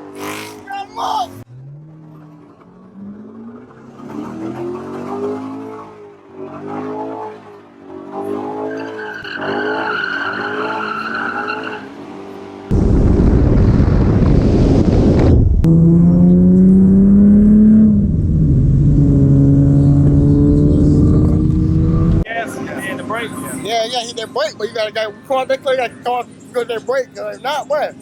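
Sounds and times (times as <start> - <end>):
sudden loud rush of noise: 12.7 - 15.7
loud car exhaust engine drone: 15.6 - 23.6.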